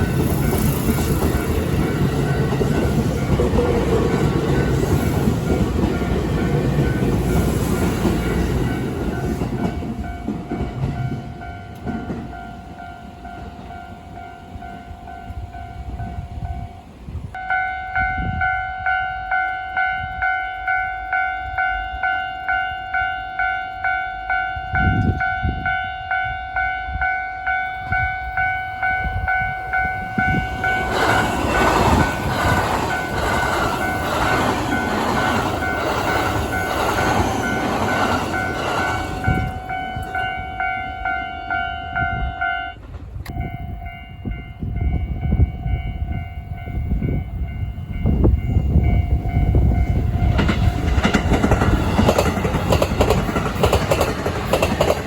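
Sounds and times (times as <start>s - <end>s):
level crossing warning bell: 0.0s - 55.0s
train wheels rumbling on track: 0.0s - 55.0s.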